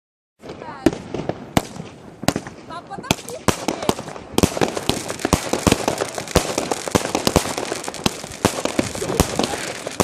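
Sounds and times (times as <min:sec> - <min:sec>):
fireworks bangs: 0:00.4 - 0:10.0
fireworks crackling: 0:00.4 - 0:10.0.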